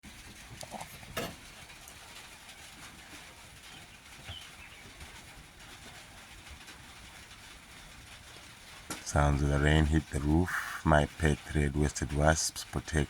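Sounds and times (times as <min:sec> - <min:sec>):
rain falling on a roof: 0:00.0 - 0:13.0
faint bird chirp: 0:03.6 - 0:05.0.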